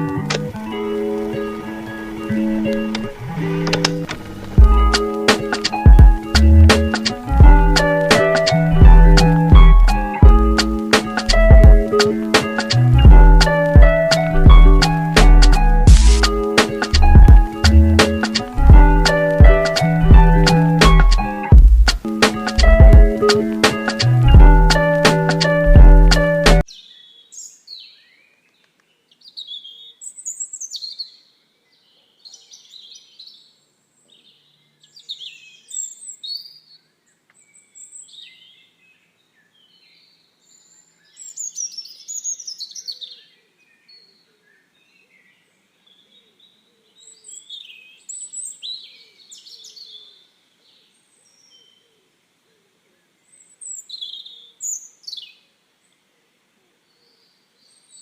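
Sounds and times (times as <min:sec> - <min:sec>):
birds chirping: 0:00.0 - 0:52.0.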